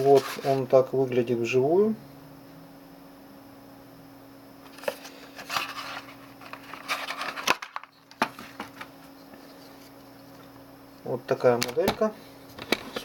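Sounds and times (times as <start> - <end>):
rustling of box: 0.0 - 0.7, 4.7 - 9.0.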